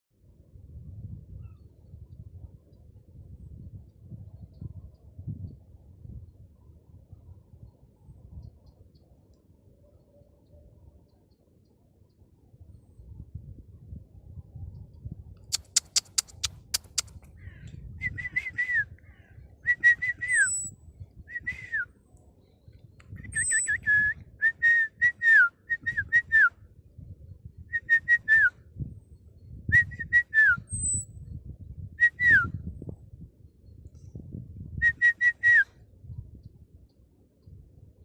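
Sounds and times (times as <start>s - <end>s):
bird whistling phrase: 20.2s - 20.8s, 23.3s - 24.0s, 30.6s - 31.1s
high bird chirps: 20.3s - 20.8s, 23.3s - 23.8s, 30.7s - 31.1s.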